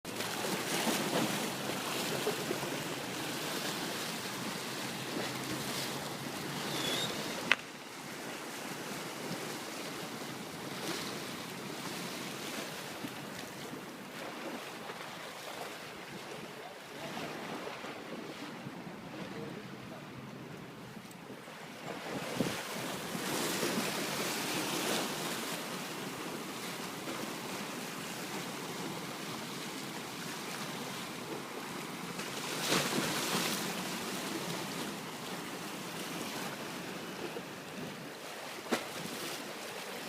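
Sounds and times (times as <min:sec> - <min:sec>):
sea waves: 0:00.1 - 0:40.0
wind noise on microphone: 0:21.2 - 0:24.0.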